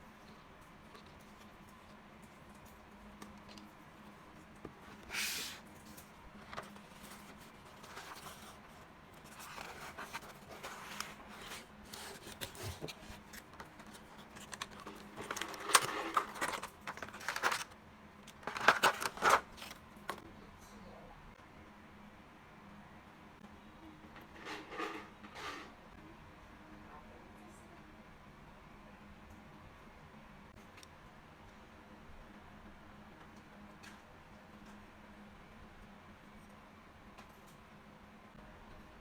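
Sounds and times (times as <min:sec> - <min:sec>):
plastic keycaps clicking and clattering: 0:13.6 - 0:17.7, 0:18.3 - 0:20.2.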